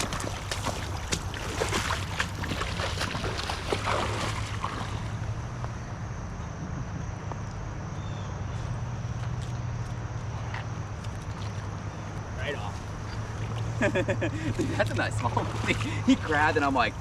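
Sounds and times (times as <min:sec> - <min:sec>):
river water rushing: 0:00.0 - 0:05.5, 0:14.4 - 0:17.0
water splashing and sloshing: 0:00.0 - 0:05.8, 0:09.0 - 0:17.0.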